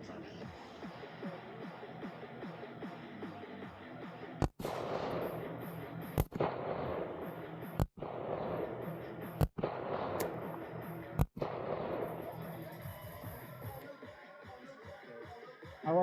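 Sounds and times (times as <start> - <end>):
pistol shots with echo: 4.4 - 12.9.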